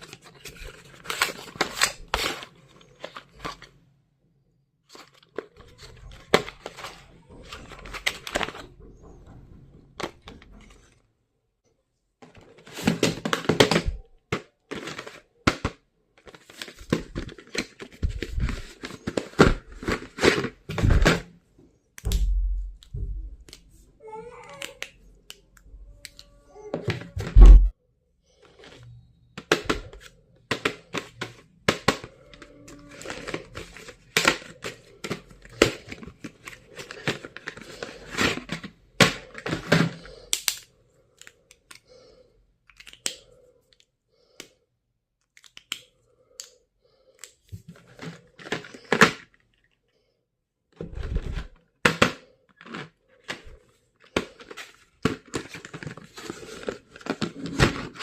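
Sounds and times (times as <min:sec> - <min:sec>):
plastic packaging crinkling and tearing: 0:00.0 - 0:03.7, 0:52.6 - 0:58.0.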